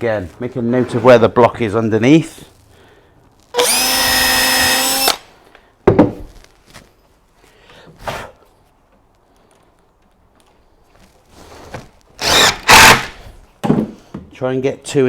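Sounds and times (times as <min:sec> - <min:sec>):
power drill driving screw into wood: 0:03.5 - 0:05.3, 0:12.2 - 0:13.3.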